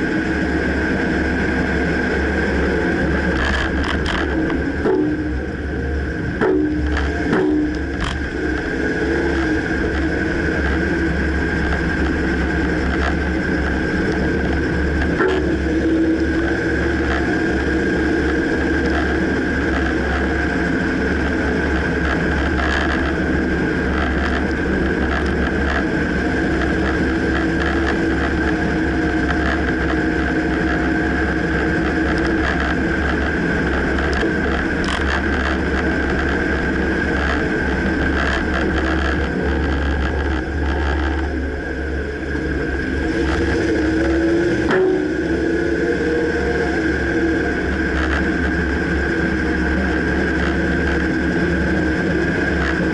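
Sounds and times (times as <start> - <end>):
pickup truck engine running: 0.0 - 52.9
clunking knocks: 6.4 - 8.6.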